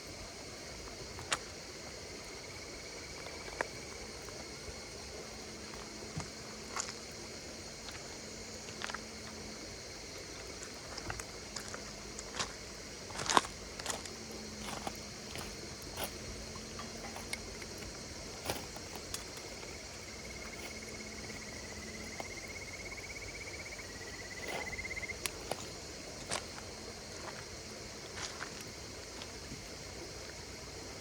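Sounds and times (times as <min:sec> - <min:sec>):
insect pulsed trill: 0:00.0 - 0:31.0
insects singing: 0:00.0 - 0:31.0
campfire crackling and popping: 0:13.8 - 0:22.4.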